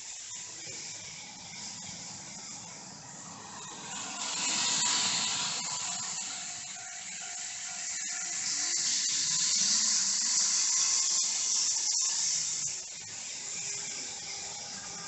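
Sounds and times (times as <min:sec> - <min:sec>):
model train motor whirring: 0:00.0 - 0:15.0.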